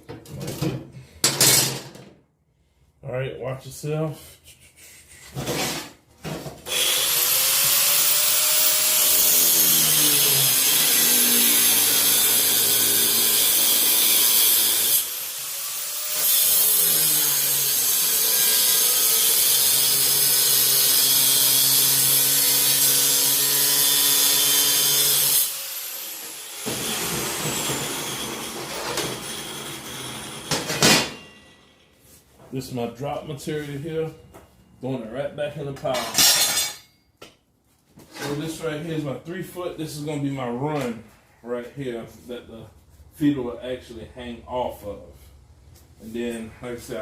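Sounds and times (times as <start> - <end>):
power tool cutting steel: 6.7 - 31.8.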